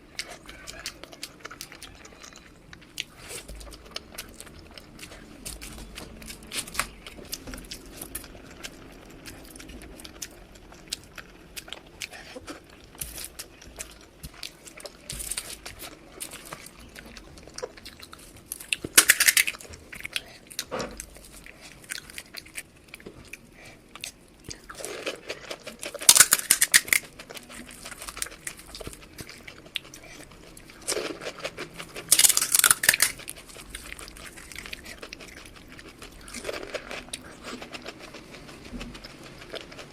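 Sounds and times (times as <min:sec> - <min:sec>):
wet chewing: 0:00.0 - 0:39.9
crunching bites: 0:18.5 - 0:20.2, 0:24.5 - 0:29.4, 0:30.8 - 0:39.8.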